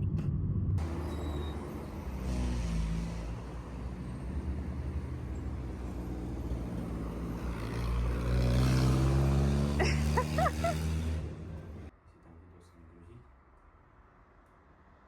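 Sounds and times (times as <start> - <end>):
vehicle engine running: 0.0 - 11.9.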